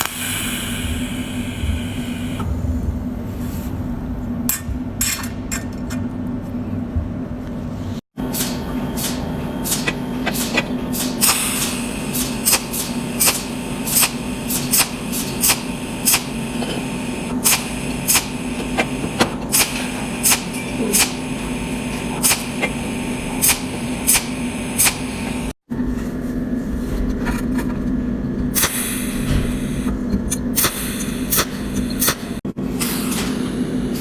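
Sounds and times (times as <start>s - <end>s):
welding machine snapping: 0.0s - 2.5s, 27.1s - 32.4s
steady machine hum: 0.0s - 8.0s, 8.6s - 32.8s.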